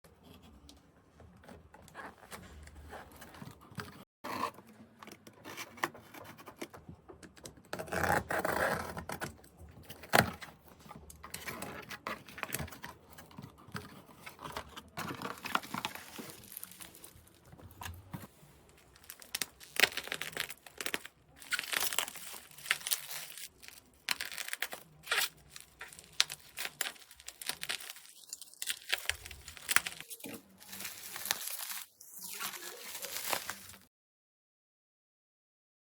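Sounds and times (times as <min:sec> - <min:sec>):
packaging tearing and crinkling: 0:14.2 - 0:18.0, 0:18.8 - 0:33.9.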